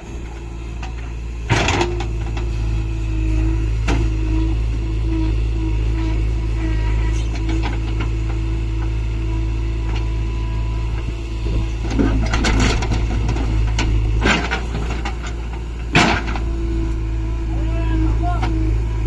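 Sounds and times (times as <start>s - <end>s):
heavy diesel machinery drone: 0.0s - 19.0s
knocks and clunks: 0.7s - 2.6s, 11.0s - 16.9s.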